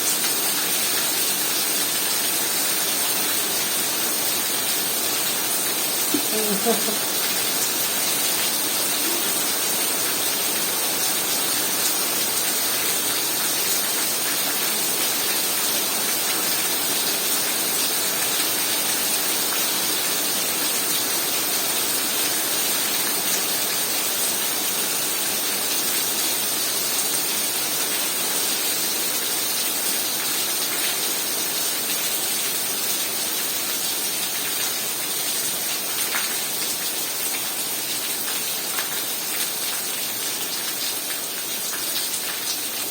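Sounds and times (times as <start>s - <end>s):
heavy rain hissing: 3.8s - 13.0s.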